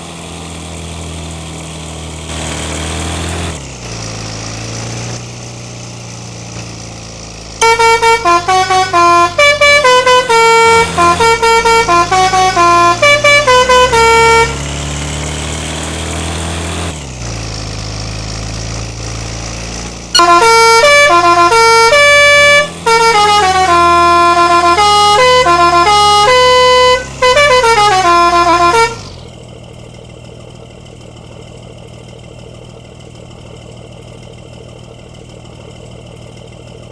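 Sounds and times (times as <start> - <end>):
bus engine idling: 7.3 - 14.7, 20.1 - 36.9
musical bus horn: 7.6 - 15.0, 20.1 - 29.2.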